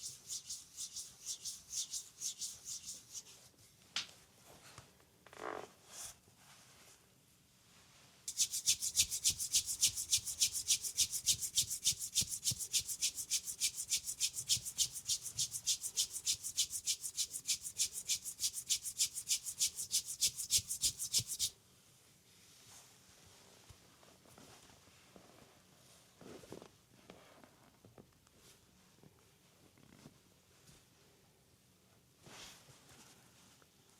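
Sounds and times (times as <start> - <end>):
hands rubbing over skin: 0.0 - 3.4, 8.3 - 21.5.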